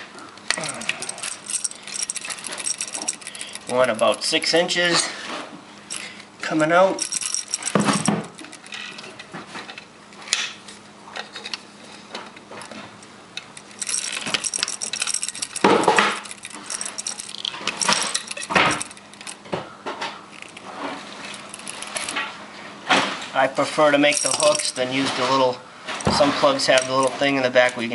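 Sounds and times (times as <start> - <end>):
hand tools clicking and clinking: 0.0 - 4.8, 5.9 - 10.4, 13.4 - 19.5, 20.3 - 22.3, 24.1 - 25.4, 26.0 - 27.9.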